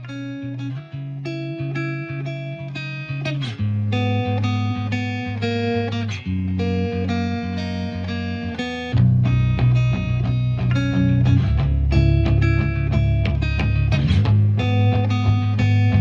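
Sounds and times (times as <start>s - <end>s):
plucked guitar music: 0.0s - 16.0s
bass line: 8.0s - 16.0s.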